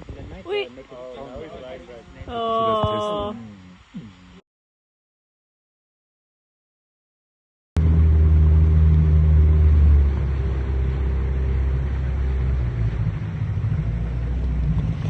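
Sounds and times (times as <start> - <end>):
motorboat engine running: 7.8 - 15.0.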